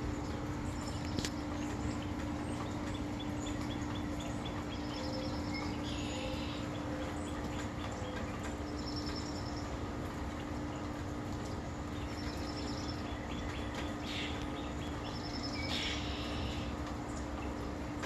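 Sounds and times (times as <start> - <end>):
steady background hum: 0.0 - 18.0
songbird trilling: 12.0 - 16.7.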